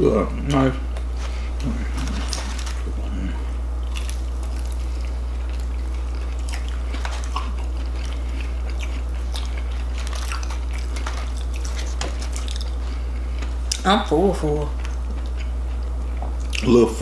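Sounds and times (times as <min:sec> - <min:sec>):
steady low hum: 0:00.0 - 0:17.0
chewing crispy food: 0:00.4 - 0:17.0.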